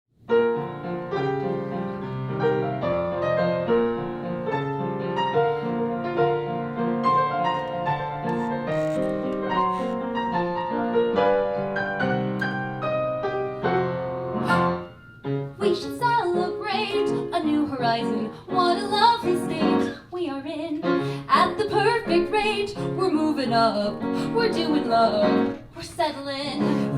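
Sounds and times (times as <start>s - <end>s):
piano playing chords and melody: 0.2s - 20.0s.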